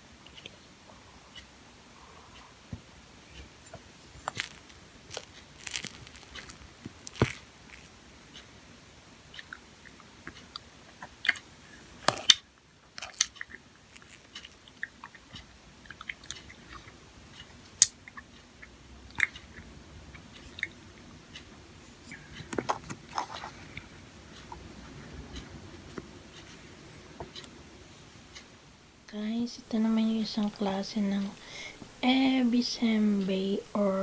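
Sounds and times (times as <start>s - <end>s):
chewing and biting: 4.2s - 7.9s, 13.0s - 20.8s.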